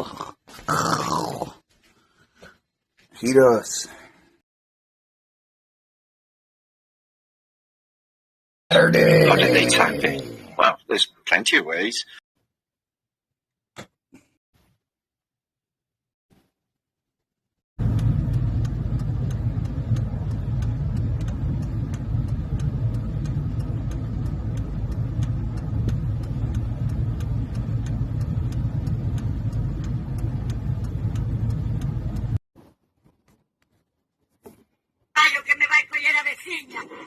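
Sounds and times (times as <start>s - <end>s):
fast light ticking: 17.8s - 32.4s
vehicle low rumble: 17.8s - 32.4s.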